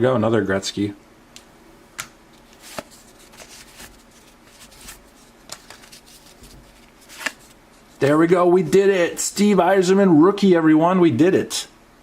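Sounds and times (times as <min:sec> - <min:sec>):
cards being flipped by hand: 0:02.0 - 0:08.0.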